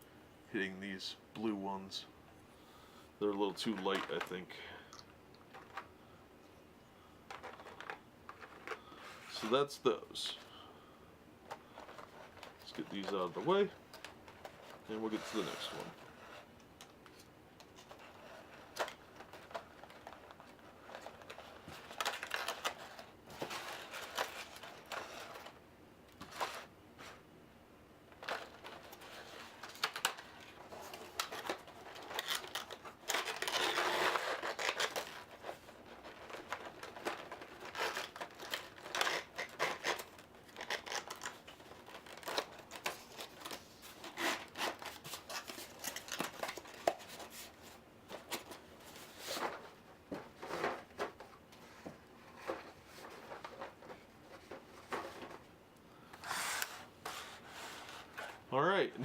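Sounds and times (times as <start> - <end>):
packaging crinkling: 17.2 - 25.6, 28.2 - 49.7.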